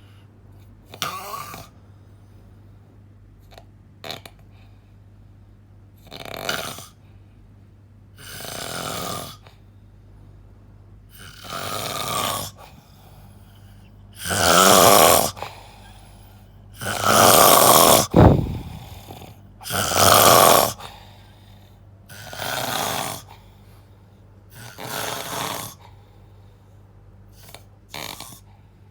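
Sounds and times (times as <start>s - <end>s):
person snoring loudly: 14.2s - 15.4s, 16.8s - 19.0s, 19.7s - 20.8s.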